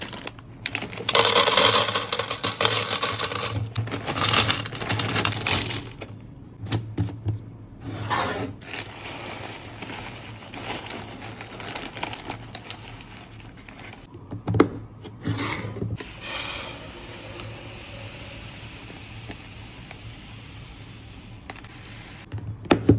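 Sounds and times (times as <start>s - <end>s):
packaging rustling and scraping: 0.0s - 6.1s, 7.8s - 14.1s.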